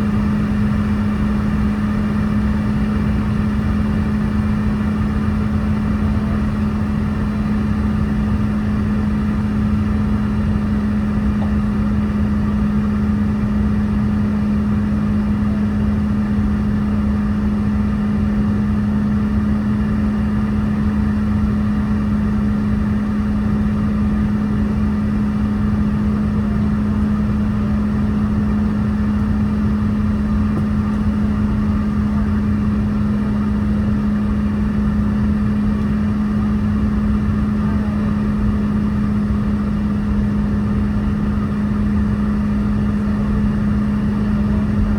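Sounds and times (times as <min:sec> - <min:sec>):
jet engines humming: 0:00.0 - 0:44.9.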